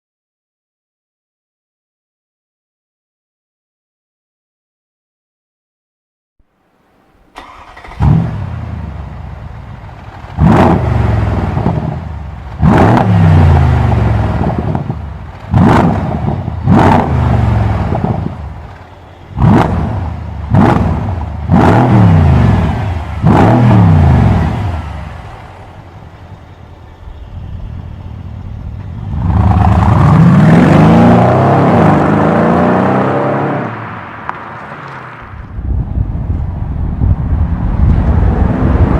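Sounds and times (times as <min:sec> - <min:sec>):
car engine starting: 0:06.9 - 0:35.2
car engine revving: 0:07.3 - 0:35.2.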